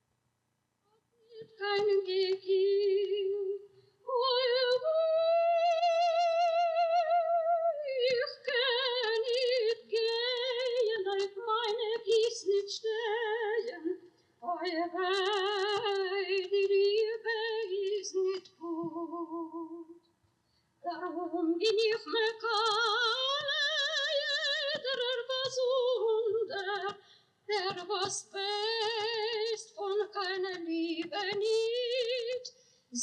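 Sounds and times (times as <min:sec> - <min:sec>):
woman singing operatic solo: 0:01.3 - 0:20.0, 0:20.8 - 0:33.0.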